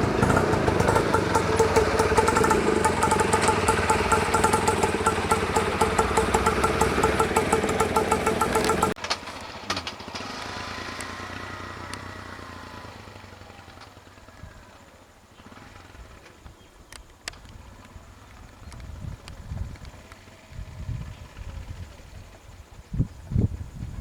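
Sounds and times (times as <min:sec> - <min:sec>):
engine whine falling in pitch: 0:00.0 - 0:09.0
sharp clicks: 0:00.0 - 0:09.0
vehicle engine running loudly: 0:00.0 - 0:09.0.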